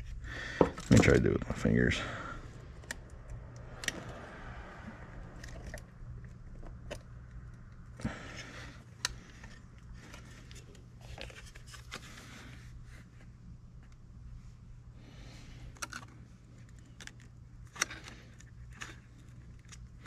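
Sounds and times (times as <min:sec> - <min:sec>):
low steady hum: 0:00.0 - 0:20.0
fingers clicking and scraping cable: 0:15.7 - 0:20.0.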